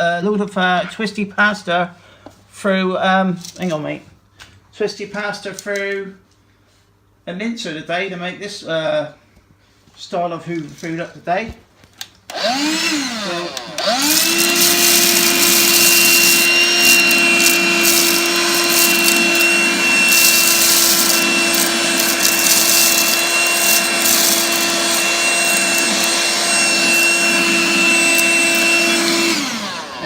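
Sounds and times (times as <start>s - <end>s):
handheld vacuum cleaner motor whine: 12.3s - 30.0s.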